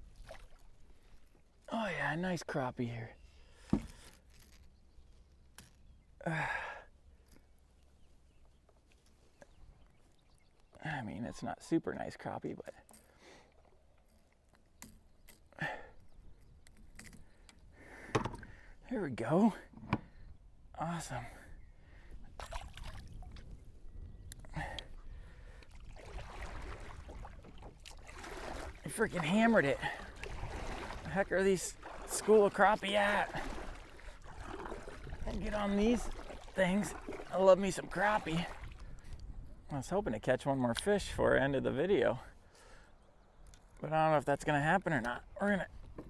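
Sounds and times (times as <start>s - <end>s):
water splashing and trickling: 0.0s - 2.6s, 22.3s - 23.6s, 24.5s - 39.2s
small knocks on a kayak: 3.7s - 4.0s, 18.1s - 18.5s
man sighing: 6.2s - 7.0s, 15.6s - 16.0s, 24.4s - 25.4s
wind rumble on microphone: 21.9s - 27.8s, 38.4s - 39.7s.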